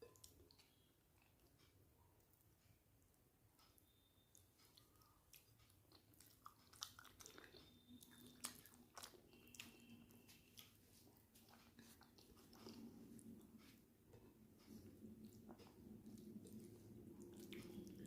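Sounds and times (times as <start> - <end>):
person chewing food: 3.8 - 18.0.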